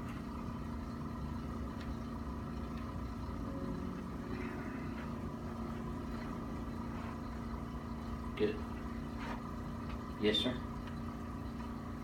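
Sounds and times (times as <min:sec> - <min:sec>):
steady machine hum: 0:00.0 - 0:12.0.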